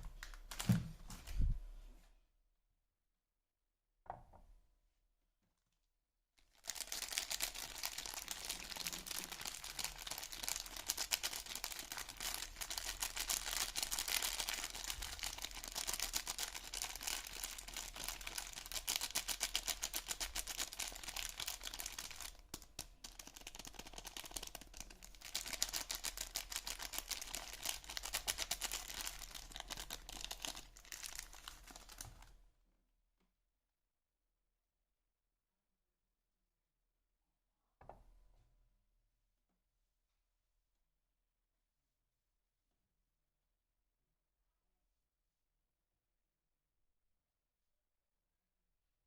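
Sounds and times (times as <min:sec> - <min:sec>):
wrapper crinkling: 0:06.5 - 0:32.3.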